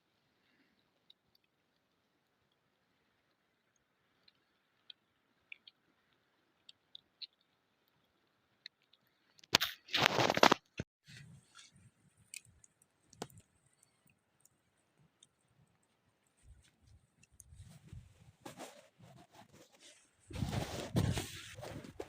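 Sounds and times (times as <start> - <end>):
campfire crackling and popping: 1.1 - 18.3.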